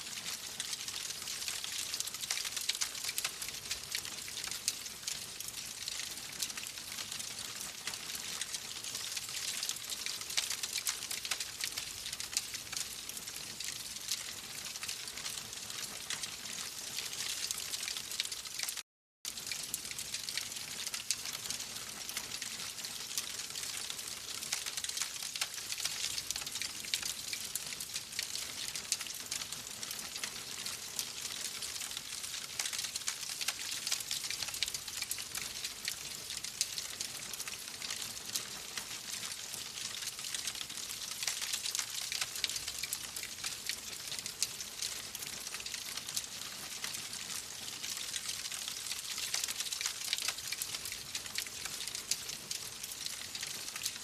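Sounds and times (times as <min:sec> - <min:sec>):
wood fire crackling: 0:00.1 - 0:13.2.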